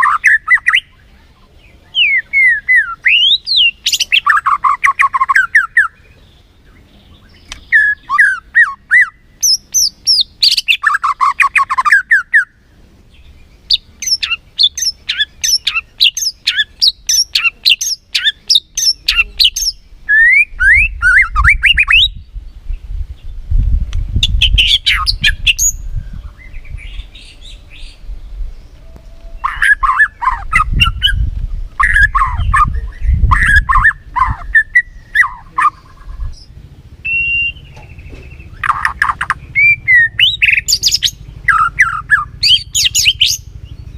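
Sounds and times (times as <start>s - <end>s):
songbird singing: 0.0s - 43.9s
low rumble: 19.8s - 43.9s.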